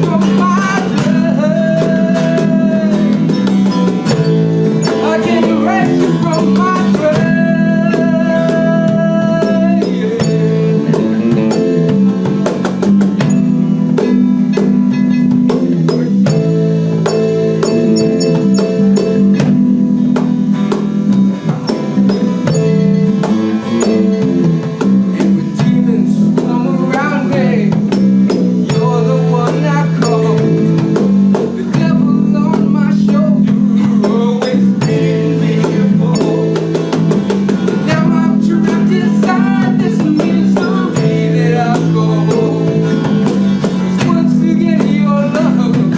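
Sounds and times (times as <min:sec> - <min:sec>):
person singing: 0:00.0 - 0:12.2, 0:25.1 - 0:28.0, 0:28.6 - 0:37.2, 0:37.8 - 0:45.9
live rock band playing: 0:00.0 - 0:45.9.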